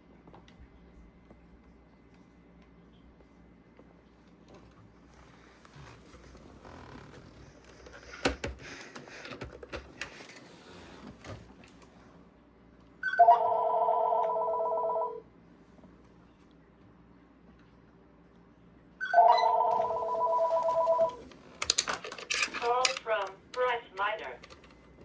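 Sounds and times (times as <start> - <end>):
electronic telephone ringer warbling: 19.0 - 21.2.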